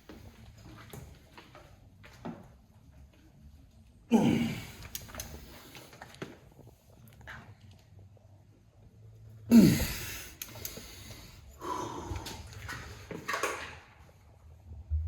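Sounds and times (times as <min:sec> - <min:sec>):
man grunting with effort: 0:04.1 - 0:04.8, 0:09.5 - 0:10.2.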